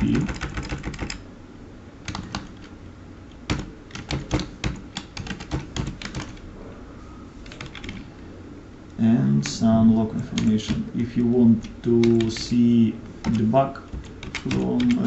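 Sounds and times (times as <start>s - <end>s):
keyboard typing: 0.0s - 1.2s, 2.0s - 2.7s, 3.4s - 6.4s, 7.4s - 8.1s, 9.4s - 12.6s, 13.2s - 15.0s.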